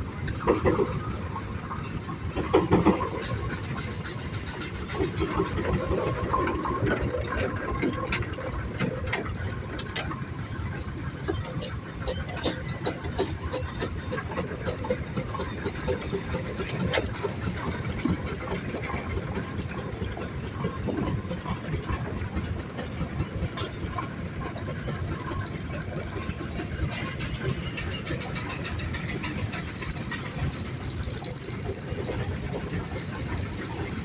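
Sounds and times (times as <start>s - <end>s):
steam engine rumble: 0.0s - 34.0s
steam hissing: 10.3s - 34.0s.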